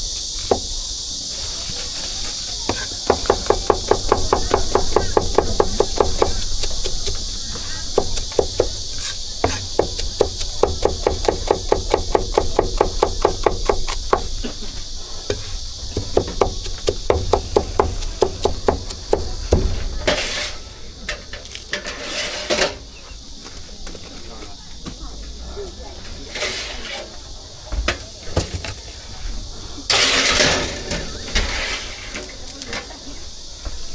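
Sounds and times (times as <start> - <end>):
cleaver chopping on wooden board: 2.7 - 14.3, 15.3 - 19.8.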